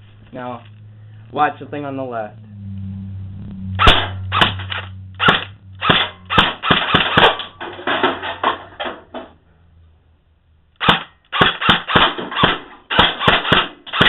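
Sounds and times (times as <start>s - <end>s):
airsoft rifle shots: 3.8s - 7.6s, 10.8s - 14.0s.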